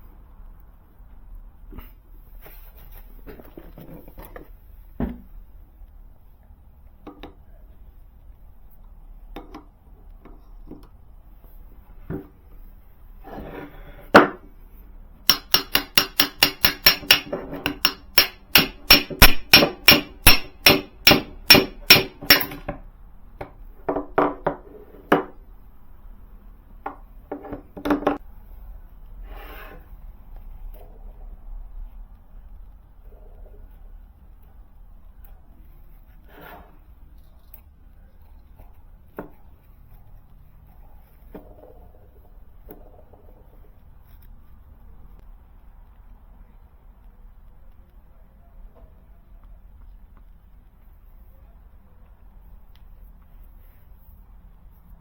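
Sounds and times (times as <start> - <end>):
hammer tapping on metal: 15.2 - 22.8
tool handling knocks: 15.3 - 22.8, 26.8 - 28.2.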